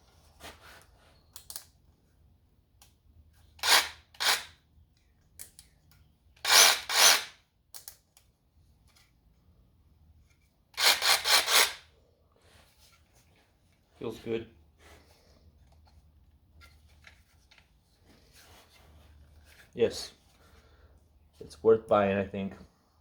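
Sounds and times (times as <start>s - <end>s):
cordless jigsaw running in bursts: 3.6s - 4.5s, 6.4s - 7.3s, 10.8s - 11.8s.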